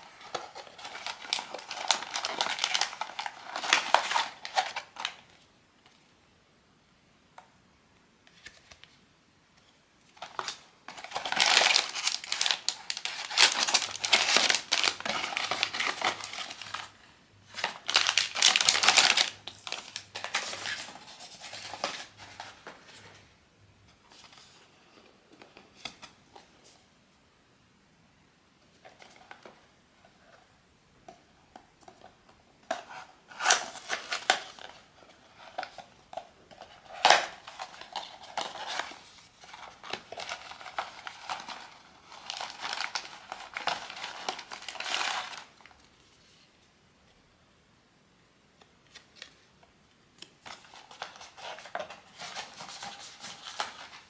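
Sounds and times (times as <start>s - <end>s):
plastic wrapping crinkling and tearing: 0.0s - 5.2s, 10.2s - 23.1s, 36.6s - 45.8s, 50.2s - 54.0s.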